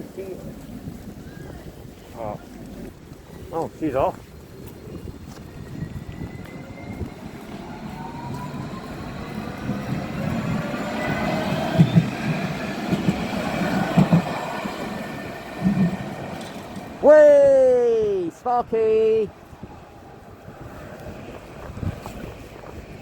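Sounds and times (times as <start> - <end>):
wheels rumbling on rail: 0.0 - 23.0
tram motors whining: 4.0 - 17.2
wheels thudding over rail joints: 4.7 - 17.1.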